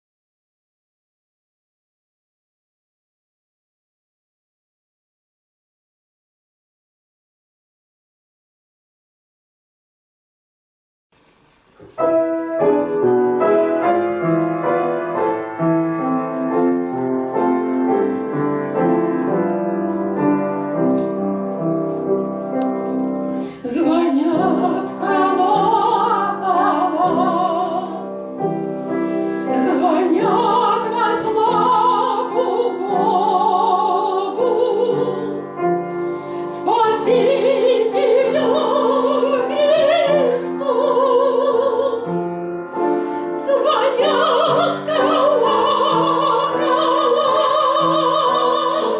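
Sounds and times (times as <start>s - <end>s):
piano chords: 11.8s - 48.9s
woman singing classical style: 23.4s - 28.5s, 29.4s - 48.9s.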